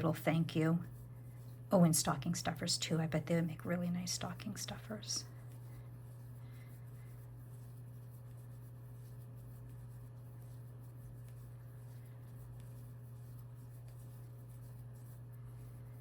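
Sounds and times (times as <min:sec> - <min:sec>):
steady low hum: 0:00.0 - 0:16.0
yarn rubbing through stitches: 0:00.0 - 0:16.0.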